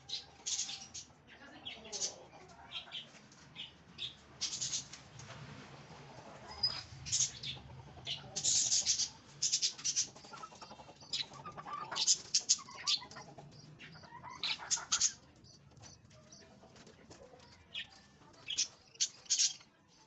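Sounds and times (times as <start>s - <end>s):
pigeons calling: 0.0s - 1.1s, 2.8s - 4.9s, 6.3s - 15.2s, 17.7s - 19.6s.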